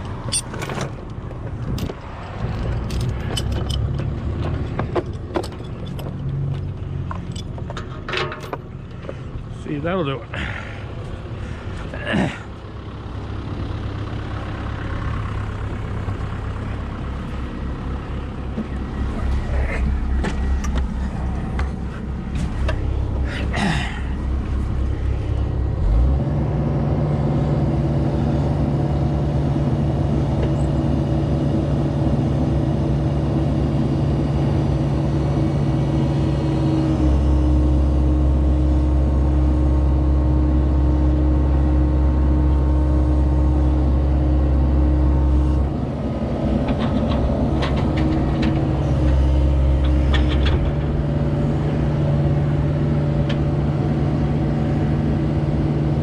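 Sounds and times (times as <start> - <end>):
diesel engine running: 0.0 - 56.0
metallic clanks: 1.7 - 8.7.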